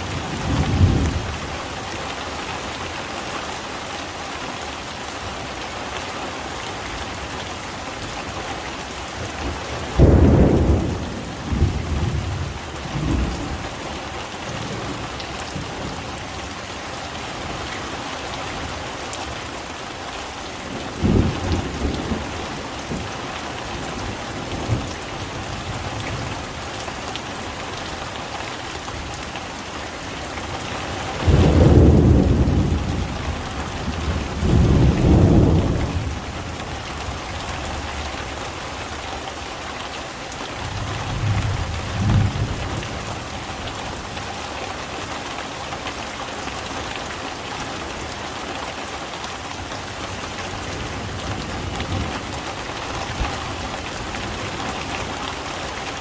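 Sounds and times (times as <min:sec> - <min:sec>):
thunder rumbling: 0:09.4 - 0:13.6, 0:31.1 - 0:36.2.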